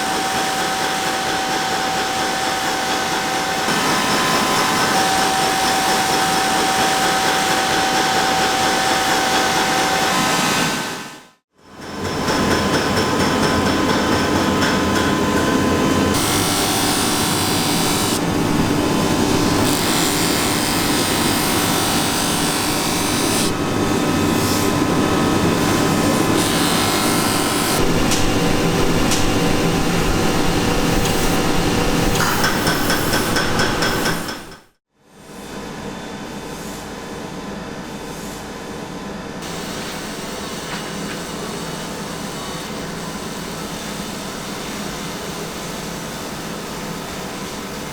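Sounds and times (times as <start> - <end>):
power tool grinding: 16.1 - 34.5.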